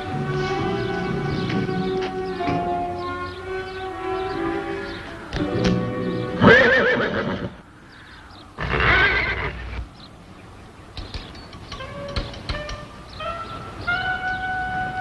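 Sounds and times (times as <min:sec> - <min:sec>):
background music: 0:00.0 - 0:07.6
horse whinnying: 0:04.0 - 0:07.6, 0:08.6 - 0:09.9.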